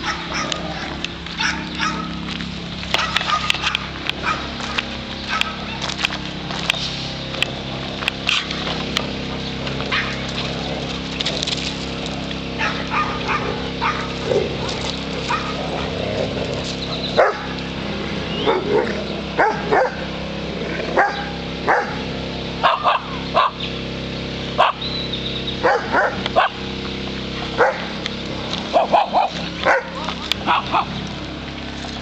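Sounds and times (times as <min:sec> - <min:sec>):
dog barking: 0:00.0 - 0:02.2, 0:02.9 - 0:05.8, 0:09.9 - 0:10.2, 0:12.6 - 0:14.7, 0:15.3 - 0:15.9, 0:17.2 - 0:17.6, 0:18.4 - 0:20.1, 0:21.0 - 0:22.0, 0:22.6 - 0:23.6, 0:24.6 - 0:24.8, 0:25.6 - 0:26.6, 0:27.6 - 0:27.9, 0:28.7 - 0:31.0
steady background hum: 0:00.0 - 0:32.0.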